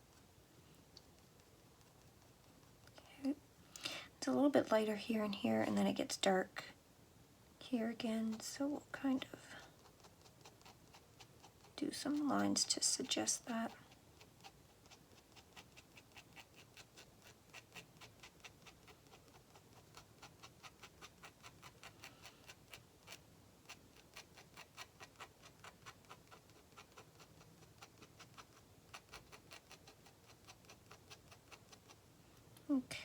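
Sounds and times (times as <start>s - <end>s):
pen nib scratching on paper: 1.0s - 3.0s, 7.8s - 32.0s.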